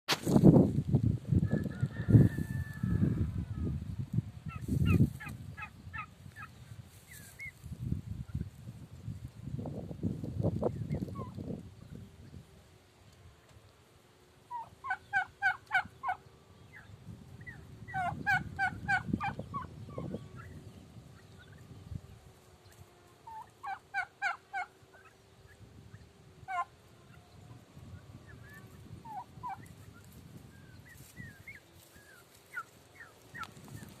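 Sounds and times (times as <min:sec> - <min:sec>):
turkeys gobbling: 0:14.5 - 0:16.3, 0:17.5 - 0:19.8, 0:23.2 - 0:25.3, 0:26.4 - 0:26.8, 0:29.0 - 0:30.1, 0:30.8 - 0:34.0
short high turkey calls: 0:14.5 - 0:16.8, 0:23.2 - 0:25.6, 0:26.5 - 0:26.7, 0:30.6 - 0:33.9.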